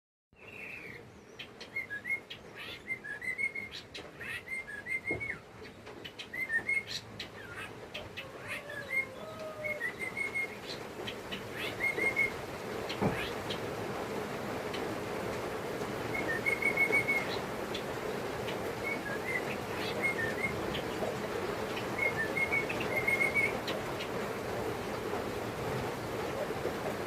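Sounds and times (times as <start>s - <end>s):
young bird chirping: 21.7s - 24.1s.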